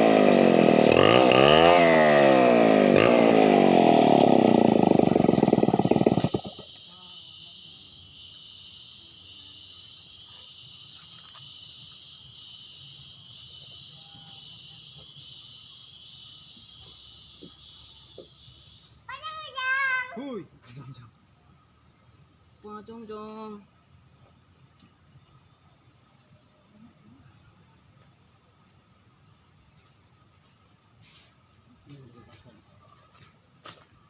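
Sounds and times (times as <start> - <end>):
chainsaw running and revving: 0.0 - 6.8
pulsing high insect drone: 0.0 - 19.2.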